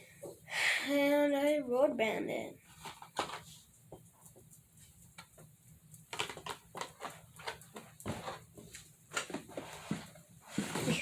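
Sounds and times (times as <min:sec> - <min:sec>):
plastic packages clicking: 0:06.1 - 0:08.4.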